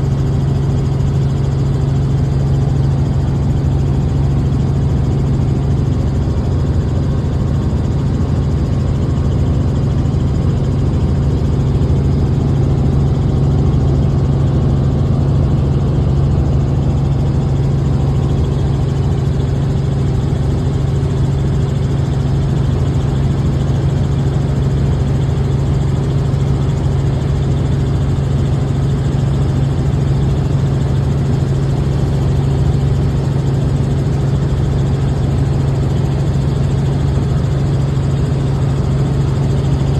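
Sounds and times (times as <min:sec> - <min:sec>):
helicopter cabin drone: 0:00.0 - 0:39.9.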